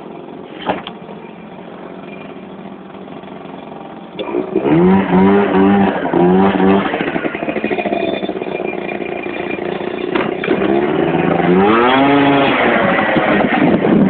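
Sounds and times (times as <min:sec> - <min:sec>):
scooter engine revving: 0:00.0 - 0:14.0.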